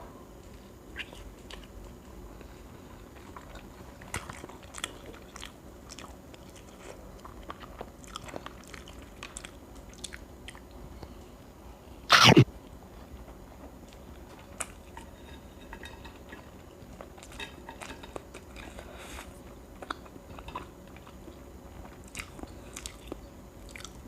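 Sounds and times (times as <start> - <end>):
person chewing food: 0.5 - 10.8, 16.0 - 24.0.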